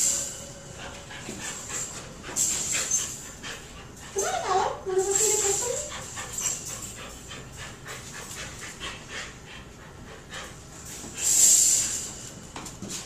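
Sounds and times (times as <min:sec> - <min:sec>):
dog panting: 0:00.7 - 0:11.2
loud hiss: 0:11.2 - 0:12.3.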